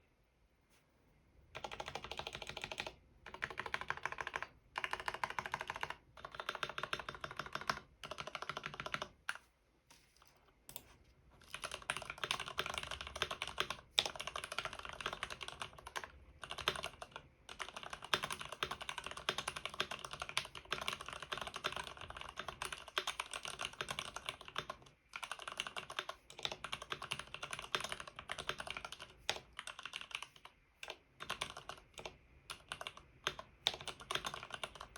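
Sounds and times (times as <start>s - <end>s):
fast typing on mechanical keyboard: 1.6s - 9.3s, 11.4s - 34.9s.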